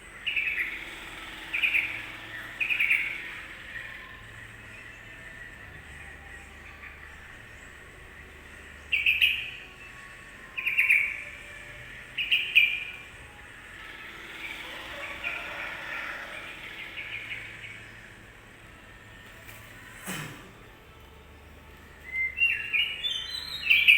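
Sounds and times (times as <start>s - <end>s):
bulbul calling: 0.2s - 5.1s.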